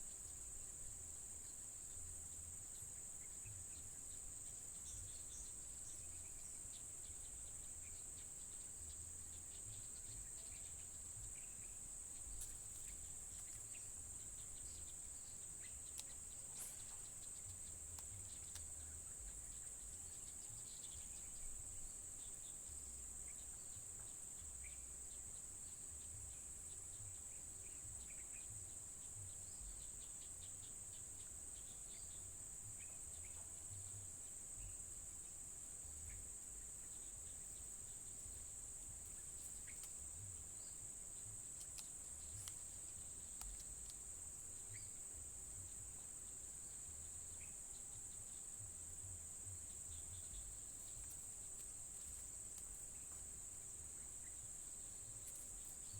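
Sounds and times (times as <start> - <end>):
high-pitched insect chorus: 0.0 - 55.9
small chirps or clicks: 15.6 - 19.0, 39.1 - 40.2, 41.4 - 44.9, 50.0 - 53.3.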